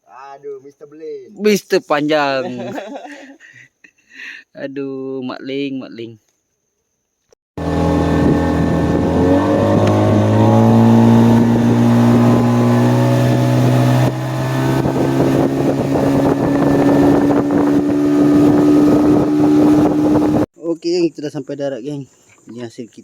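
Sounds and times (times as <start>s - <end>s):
outboard motor running: 7.6s - 20.5s.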